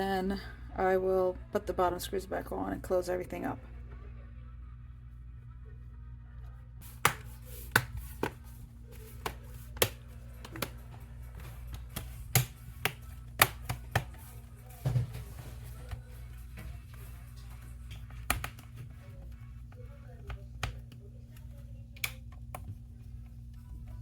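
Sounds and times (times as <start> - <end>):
steady low hum: 0.0 - 24.0
laptop cover clicks and taps: 11.8 - 14.2, 18.1 - 18.7.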